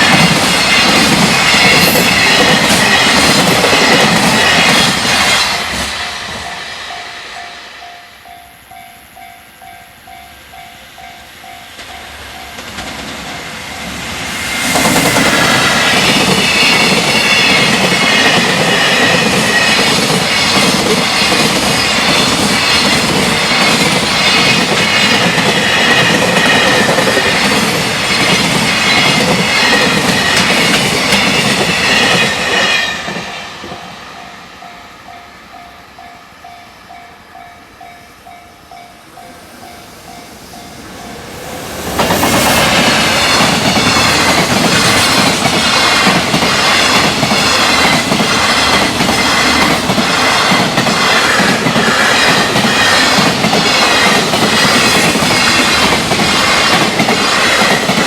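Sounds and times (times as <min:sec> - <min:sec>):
train wheels clattering over rail joints: 0:00.0 - 0:06.0, 0:14.6 - 0:33.8, 0:42.0 - 0:58.0.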